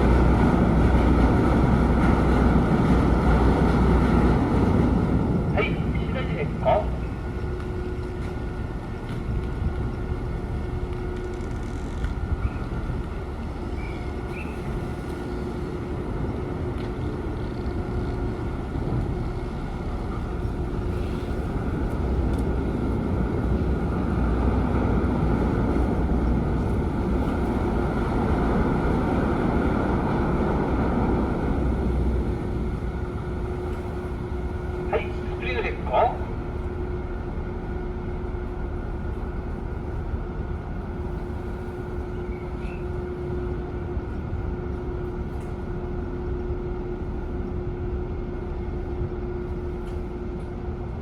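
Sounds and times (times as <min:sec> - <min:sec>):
ship engines rumbling: 0:00.0 - 0:51.0
steady hum: 0:05.0 - 0:08.7, 0:29.8 - 0:47.5.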